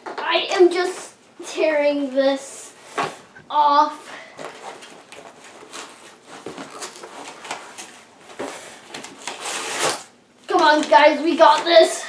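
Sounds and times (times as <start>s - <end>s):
packaging crinkling and rustling: 4.3s - 11.0s
cardboard packaging torn: 4.6s - 10.1s.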